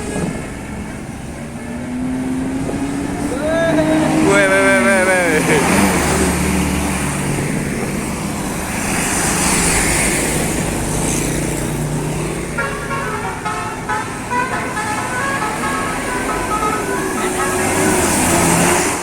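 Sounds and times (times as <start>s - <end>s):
bus engine and road noise: 0.0s - 19.0s
multi-tone bus air horn: 12.5s - 19.0s.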